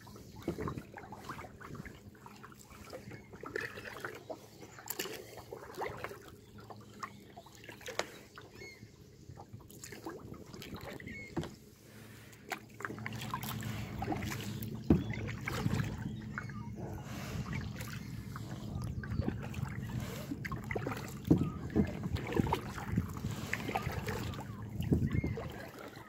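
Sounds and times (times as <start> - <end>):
water lapping against kayak hull: 0.0 - 26.0
low rumble: 13.0 - 25.0.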